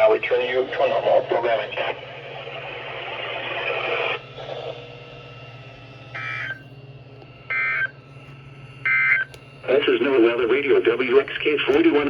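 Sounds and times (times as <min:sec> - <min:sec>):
radio hiss: 0:00.0 - 0:04.8, 0:08.9 - 0:12.0.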